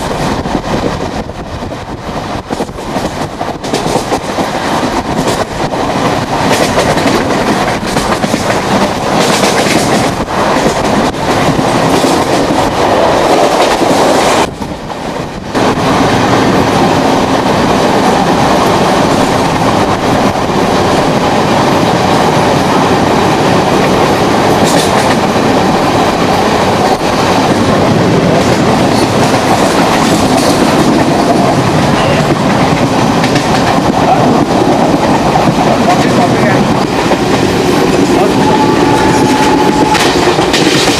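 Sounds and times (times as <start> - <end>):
train wheels and carriages din: 0.0 - 40.9.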